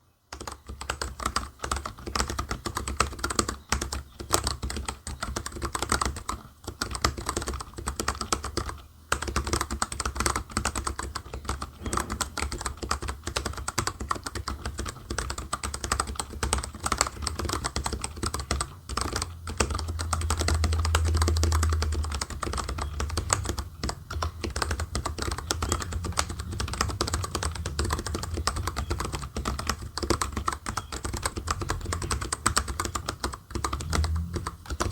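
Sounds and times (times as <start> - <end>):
mechanical keyboard typing: 0.3 - 34.9.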